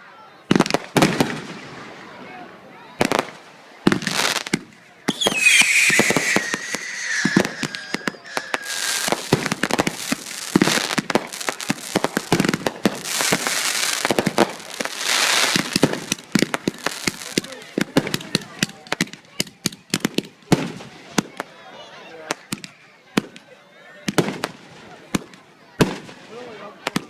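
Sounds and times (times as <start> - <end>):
fireworks bangs and crackling: 0.5 - 2.0, 3.0 - 21.5, 22.2 - 27.0
descending firework whistle: 5.1 - 9.6.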